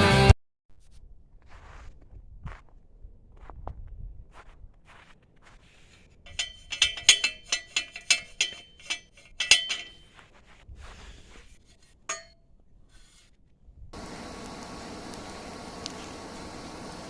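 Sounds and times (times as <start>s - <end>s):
ringing metal strikes: 6.3s - 10.1s, 12.1s - 12.4s.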